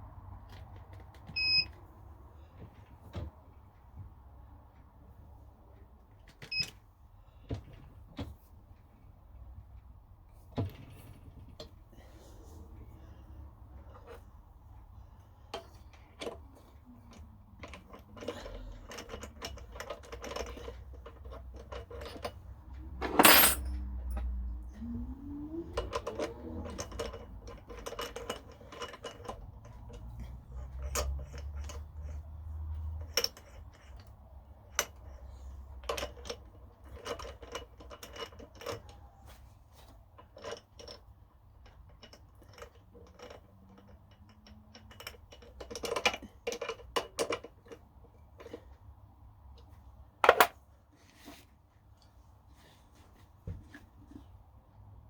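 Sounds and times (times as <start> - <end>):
metal tools clinking on workbench: 23.0 - 24.3.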